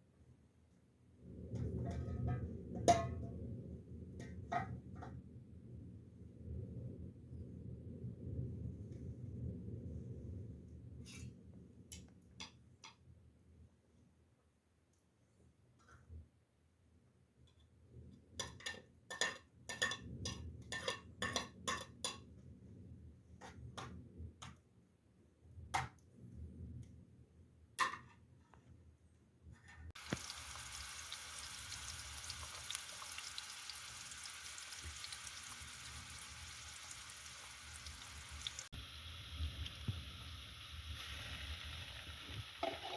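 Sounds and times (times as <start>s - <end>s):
food sizzling in a pan: 30.0s - 42.9s.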